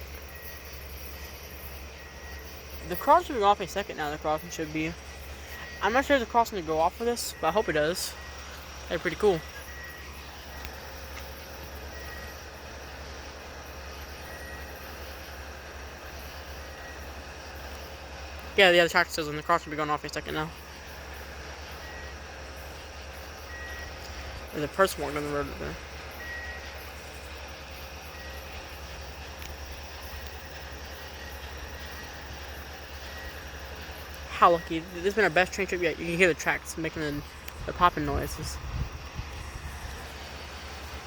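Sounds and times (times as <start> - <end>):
low engine rumble: 0.0 - 41.0
faint short beeps: 5.3 - 5.9, 11.9 - 12.4, 23.5 - 24.1, 26.2 - 26.8.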